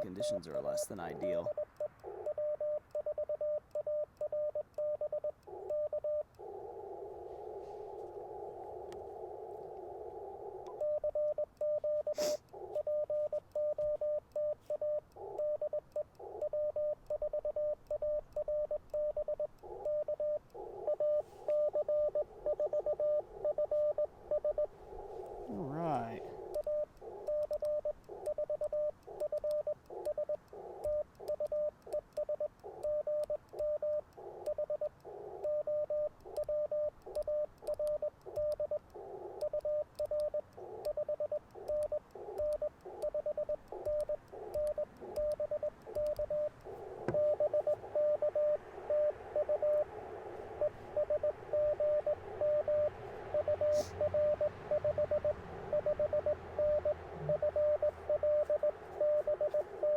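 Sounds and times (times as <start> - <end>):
morse code tones: 0.0 - 6.2, 10.7 - 49.9, 50.5 - 59.9
receiver hiss: 0.0 - 59.9
click: 26.5 - 30.2, 36.2 - 38.6, 39.4 - 41.0, 41.7 - 46.3.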